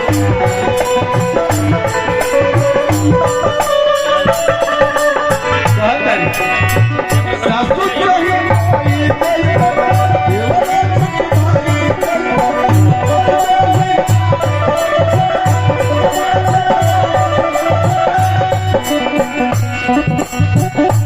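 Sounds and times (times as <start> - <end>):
hand drums beating: 0.0 - 21.0
melody line: 5.1 - 10.2.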